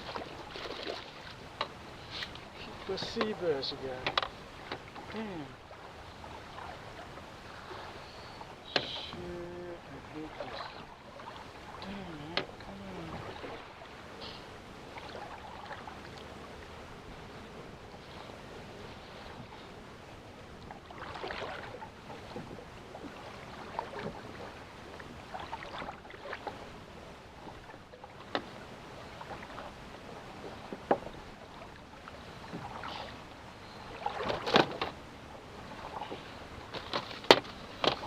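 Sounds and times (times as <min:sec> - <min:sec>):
fishing gear knocks and rustles: 0:36.7 - 0:38.0.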